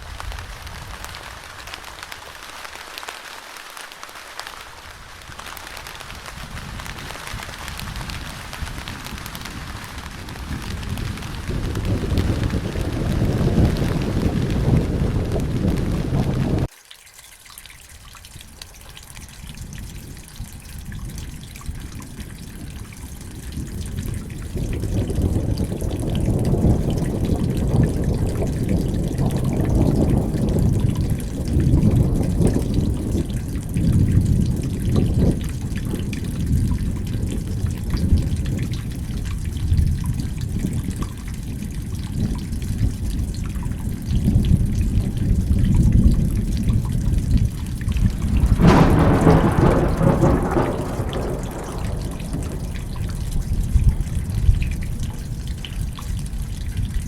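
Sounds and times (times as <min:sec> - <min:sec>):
rain: 0:00.0 - 0:57.0
deep rumble: 0:09.0 - 0:16.7, 0:44.3 - 0:55.7
dripping water: 0:11.0 - 0:57.0.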